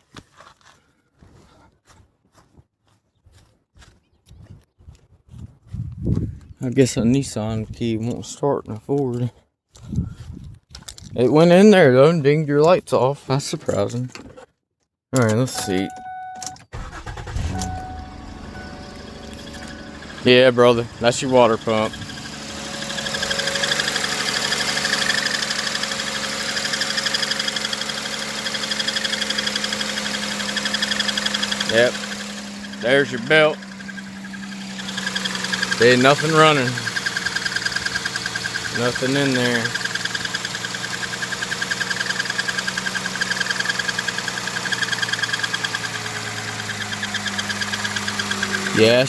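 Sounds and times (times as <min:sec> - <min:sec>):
car engine idling: 0:16.7 - 0:49.0
fast ticking knock: 0:21.0 - 0:32.8, 0:33.6 - 0:48.9.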